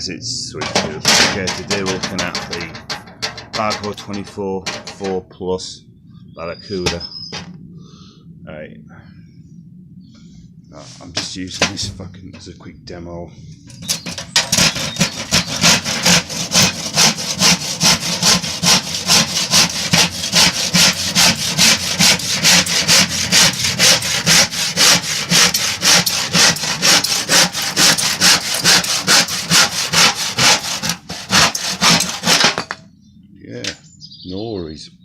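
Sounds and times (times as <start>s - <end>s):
hand saw sawing through wood: 0.8s - 2.9s, 13.9s - 32.7s.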